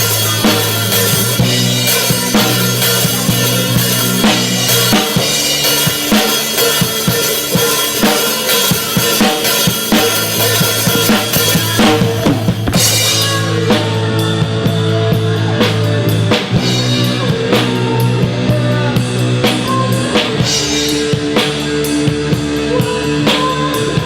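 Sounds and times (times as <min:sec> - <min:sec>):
rock music: 0:00.0 - 0:24.0
drum kit hits: 0:09.8 - 0:13.5.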